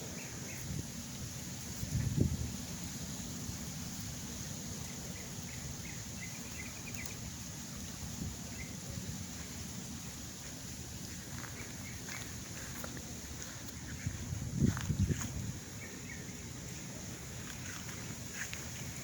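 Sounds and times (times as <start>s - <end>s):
faint bird chirps: 4.3s - 9.7s.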